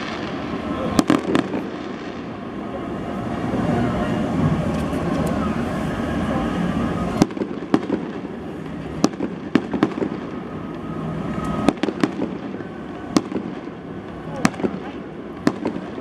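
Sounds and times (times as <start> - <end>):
fireworks cracks and bangs: 0.0 - 16.0
dense low rumble: 1.5 - 7.3.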